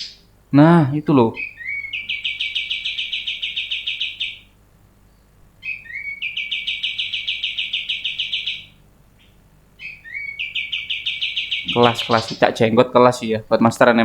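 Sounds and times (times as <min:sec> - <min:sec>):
bird singing fast trill: 0:00.0 - 0:00.3, 0:00.9 - 0:12.8.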